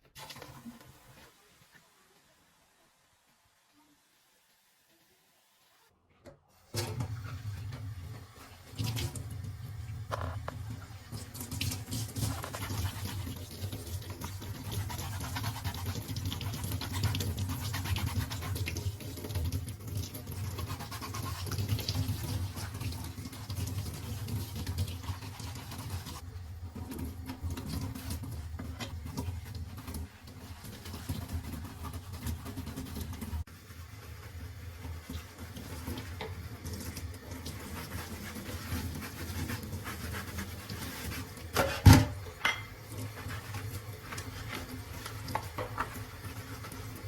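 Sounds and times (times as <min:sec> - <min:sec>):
scrubbing and rubbing: 0:11.8 - 0:19.4, 0:20.2 - 0:26.2, 0:27.2 - 0:41.8, 0:42.9 - 0:47.0.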